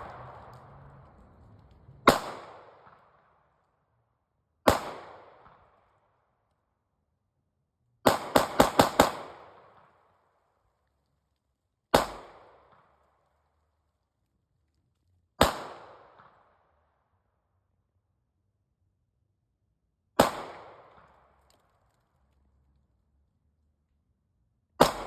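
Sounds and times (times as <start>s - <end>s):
gunshots echoing: 0.0s - 3.0s, 4.7s - 5.8s, 8.1s - 9.9s, 11.9s - 12.7s, 15.4s - 16.3s, 20.2s - 21.2s, 24.8s - 25.0s.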